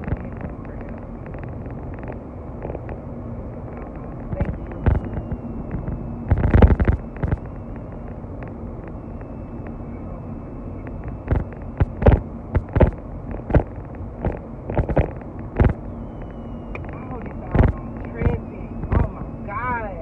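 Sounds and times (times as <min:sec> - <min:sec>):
car road and engine noise: 0:00.0 - 0:20.0
loud thumps and knocks: 0:05.8 - 0:07.4, 0:11.3 - 0:15.8.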